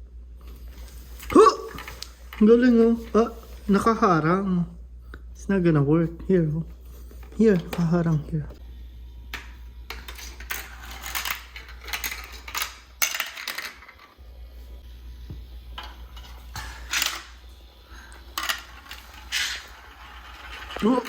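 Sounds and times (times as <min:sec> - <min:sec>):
plastic marble-run parts clacking: 0:09.9 - 0:14.1, 0:18.3 - 0:21.0.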